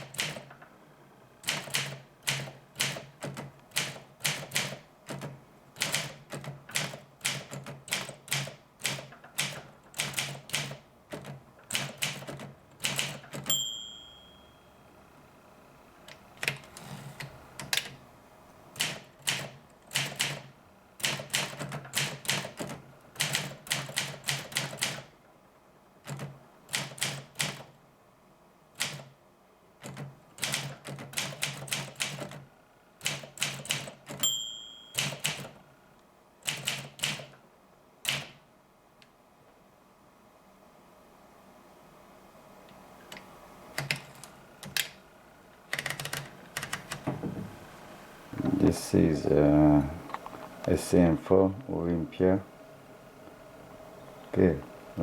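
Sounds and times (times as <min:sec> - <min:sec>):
typewriter keys striking: 0:00.0 - 0:00.5, 0:01.4 - 0:13.5, 0:18.8 - 0:25.1, 0:29.8 - 0:32.4, 0:33.0 - 0:34.3, 0:34.9 - 0:35.6, 0:36.4 - 0:37.3, 0:45.7 - 0:47.0
typewriter margin bell ding: 0:13.4 - 0:14.7, 0:34.2 - 0:35.4.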